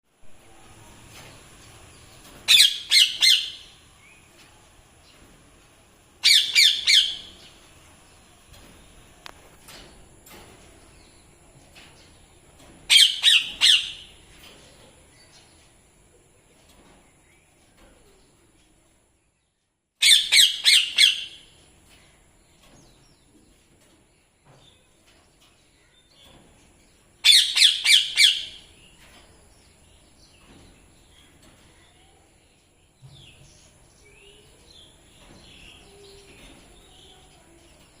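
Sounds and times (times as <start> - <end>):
parrot harsh calls: 6.2 - 7.3, 20.0 - 21.4, 27.2 - 28.6.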